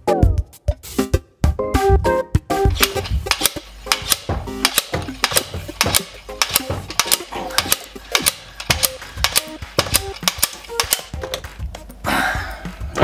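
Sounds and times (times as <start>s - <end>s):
metallic clicking and tapping: 2.7s - 12.0s.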